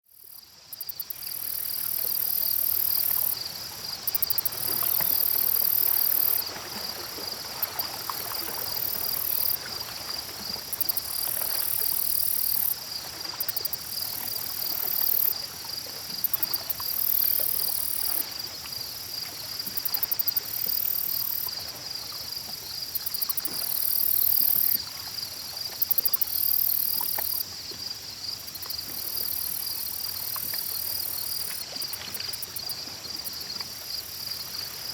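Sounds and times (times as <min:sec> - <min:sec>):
faint water sounds: 0:00.0 - 0:34.9
shrill insect calls: 0:00.1 - 0:06.5, 0:10.8 - 0:15.4, 0:19.7 - 0:34.9
insect trilling steadily: 0:00.1 - 0:07.0, 0:07.6 - 0:22.1, 0:22.7 - 0:34.9.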